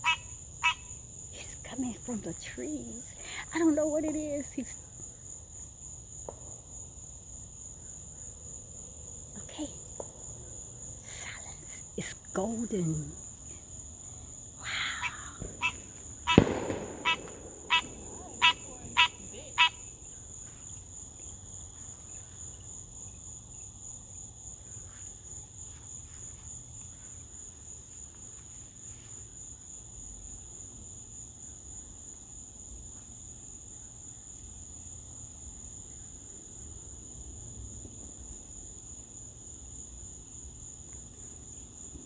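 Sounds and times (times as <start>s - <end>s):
night insects trilling: 0.0s - 42.0s
sharp animal call: 14.9s - 19.9s.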